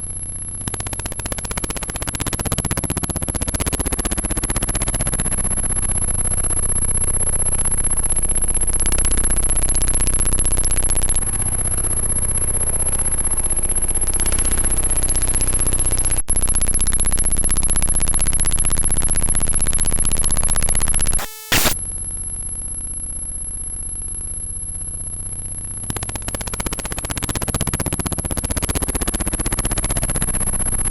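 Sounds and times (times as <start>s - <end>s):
harsh synthetic buzzing: 21.2s - 21.8s
high-pitched whine: 21.2s - 21.8s.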